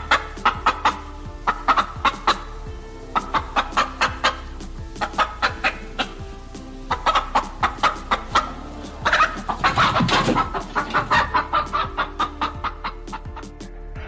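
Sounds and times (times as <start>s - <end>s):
background music: 0.0s - 14.0s
chickens clucking: 6.9s - 13.5s.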